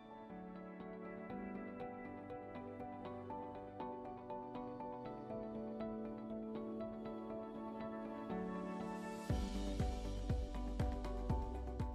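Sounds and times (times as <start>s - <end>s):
deep drum beat: 9.3s - 11.9s.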